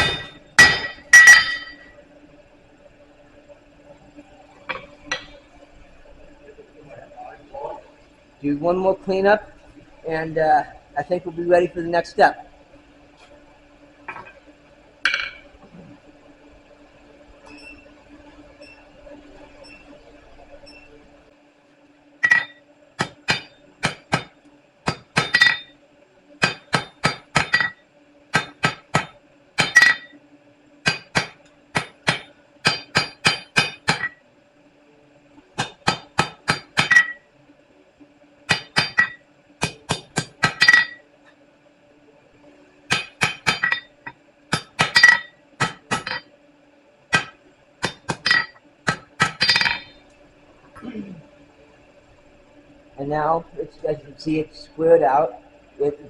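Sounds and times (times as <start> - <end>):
hammer striking hot steel on anvil: 0.0 - 1.9, 15.0 - 15.4, 22.2 - 25.8, 26.4 - 30.2, 30.8 - 34.2, 35.6 - 37.2, 38.5 - 41.0, 42.9 - 46.3, 47.1 - 49.9
low steady hum: 0.0 - 56.0.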